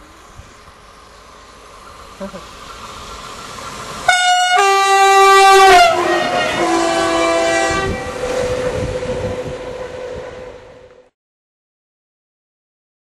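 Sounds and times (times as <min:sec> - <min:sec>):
passing train rumble: 0:00.0 - 0:11.2
train horn chord: 0:04.1 - 0:11.1.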